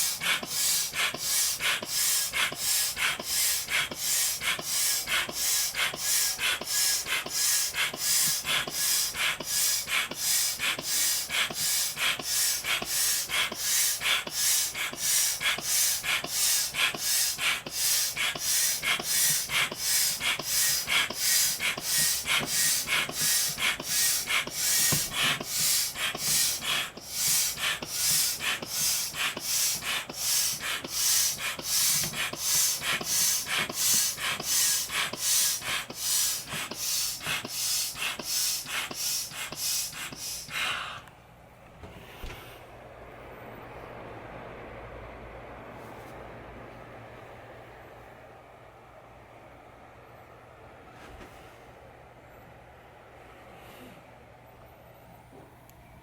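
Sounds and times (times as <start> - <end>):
breathy puffs blowing up cushion: 0.0 - 40.9.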